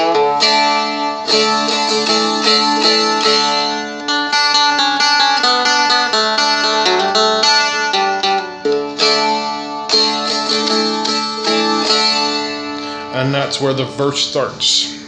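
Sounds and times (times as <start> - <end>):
plucked dulcimer melody: 0.0 - 13.3.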